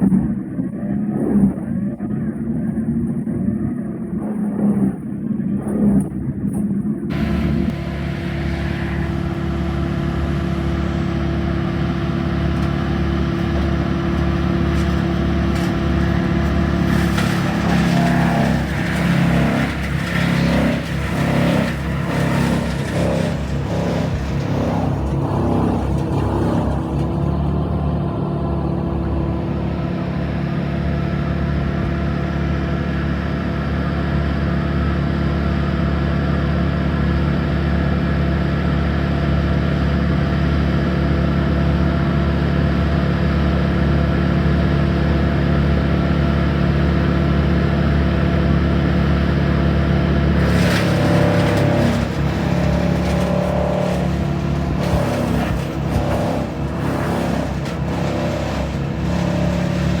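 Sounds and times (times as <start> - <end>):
wood chipper engine running: 0.0 - 60.0
wood crunching being chipped: 8.8 - 27.4, 50.3 - 60.0.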